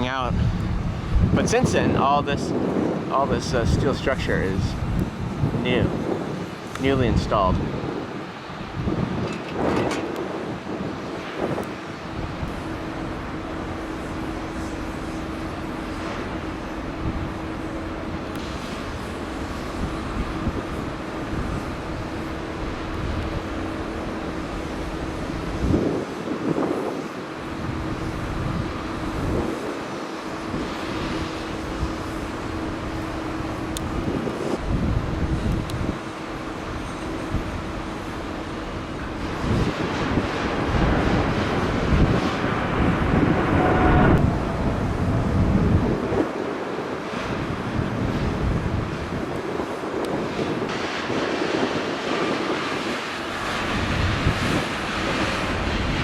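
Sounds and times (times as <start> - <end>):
wind on microphone: 0.0 - 56.0
road traffic hum: 3.4 - 56.0
road traffic passing: 40.0 - 49.4
faint high whine: 41.4 - 47.0.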